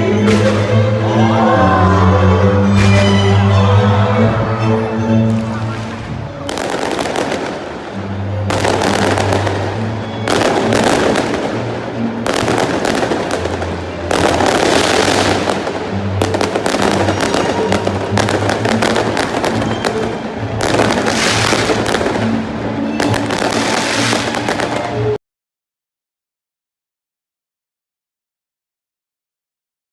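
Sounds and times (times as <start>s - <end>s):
music playing: 0.0s - 25.2s
fireworks crackling and popping: 5.4s - 25.1s.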